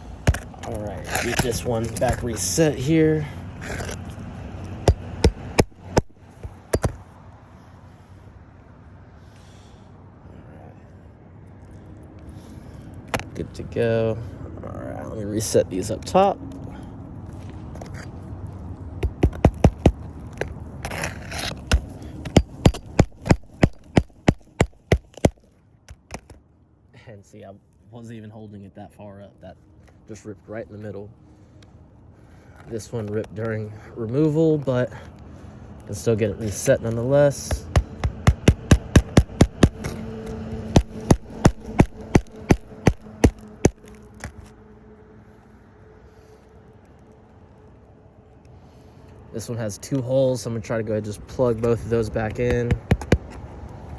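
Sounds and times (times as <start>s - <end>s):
scraping rustle: 0.4s - 2.9s, 20.0s - 22.3s
hammer striking nails: 4.8s - 7.0s, 19.0s - 20.0s, 21.7s - 25.4s, 37.5s - 39.9s, 40.7s - 43.8s, 52.5s - 53.3s.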